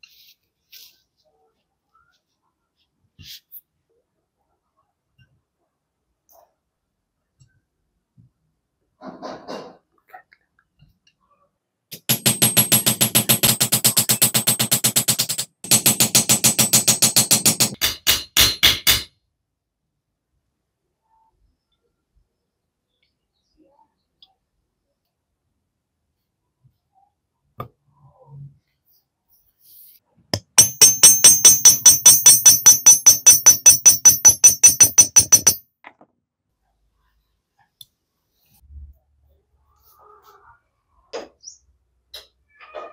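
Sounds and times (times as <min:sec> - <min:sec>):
rapid ringing metallic strikes: 0:30.6 - 0:35.6
rhythmic percussive music: 0:30.6 - 0:35.6.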